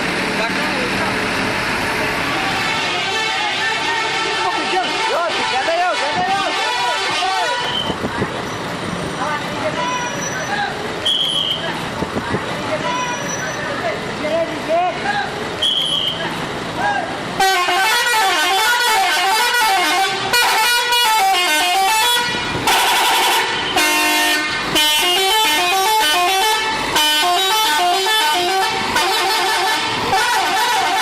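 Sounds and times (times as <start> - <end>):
musical bus horn: 2.4 - 7.9, 17.4 - 31.0.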